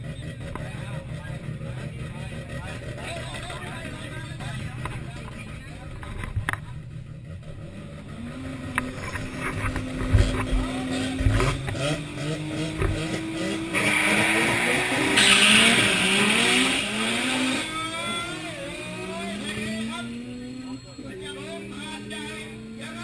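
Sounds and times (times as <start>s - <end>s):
rotary engine revving hard: 7.2s - 23.0s
loud hissing rush: 13.7s - 17.0s.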